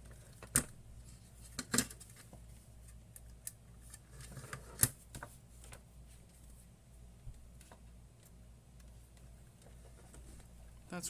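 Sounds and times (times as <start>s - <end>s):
faint low hum: 0.0s - 11.0s.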